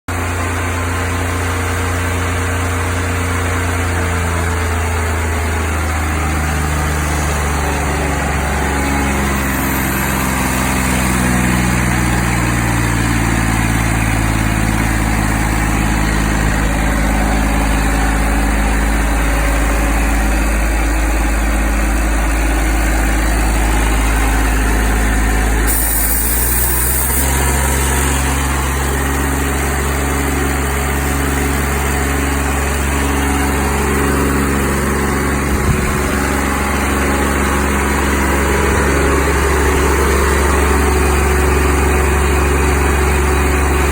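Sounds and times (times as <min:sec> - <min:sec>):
air compressor engine running: 0:00.1 - 0:43.9
high air hiss: 0:25.6 - 0:28.2.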